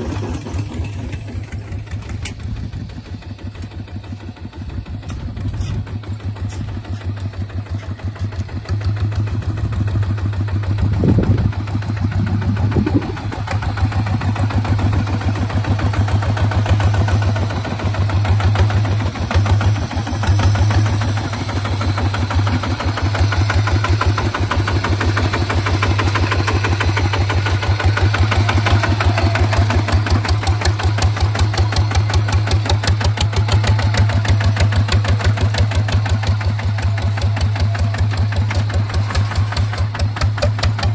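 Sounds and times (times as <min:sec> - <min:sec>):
bulldozer engine idling: 0:00.0 - 0:40.9
low thumps: 0:10.9 - 0:13.6.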